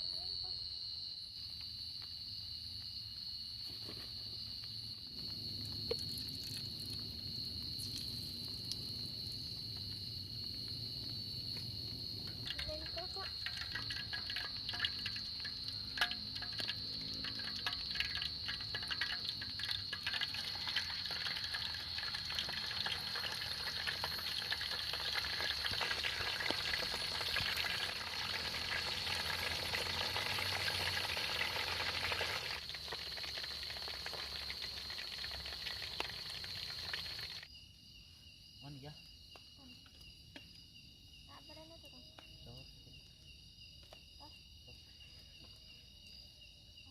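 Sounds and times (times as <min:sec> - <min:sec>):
high insect trill: 0:00.0 - 0:46.9
food sizzling in a pan: 0:12.3 - 0:37.4.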